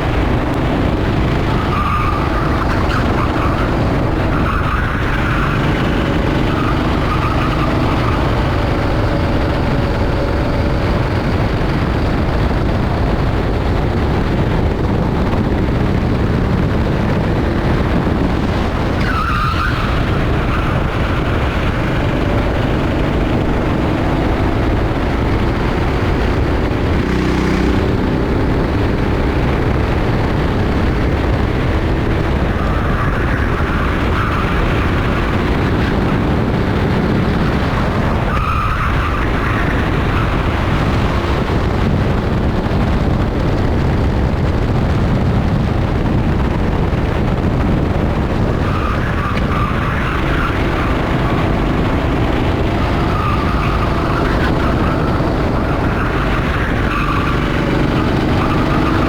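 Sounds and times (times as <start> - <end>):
kart engine running: 0.0 - 59.0
tyres squealing: 18.6 - 25.9, 48.6 - 59.0.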